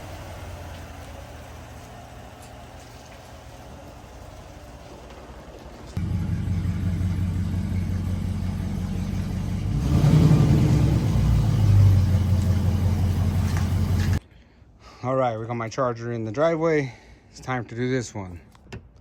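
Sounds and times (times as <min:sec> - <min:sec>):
vehicle engine revving: 0:06.0 - 0:14.2.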